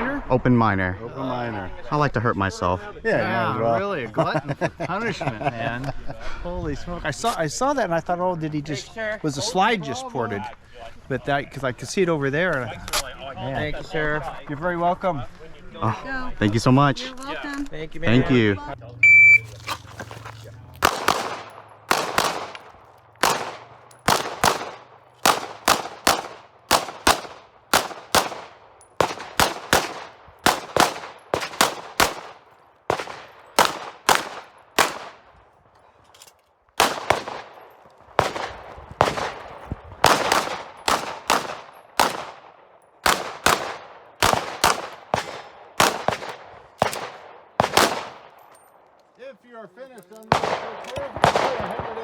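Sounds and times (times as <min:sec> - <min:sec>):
pistol shots: 0:19.1 - 0:35.4, 0:36.2 - 0:48.8, 0:50.3 - 0:52.0.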